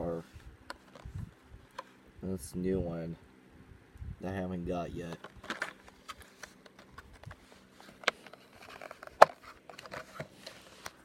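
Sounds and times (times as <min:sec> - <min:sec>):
plastic package clicks and rustles: 0:05.1 - 0:11.0.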